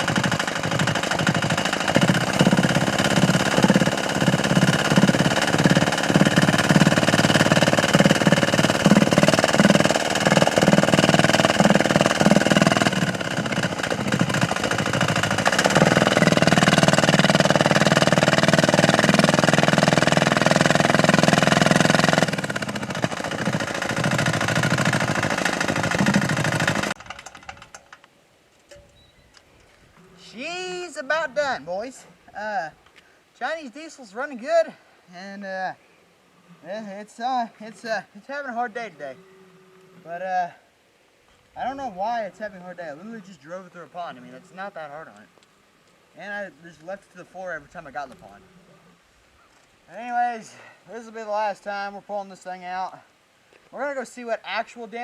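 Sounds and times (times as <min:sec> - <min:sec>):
diesel engine clattering: 0:00.0 - 0:27.8.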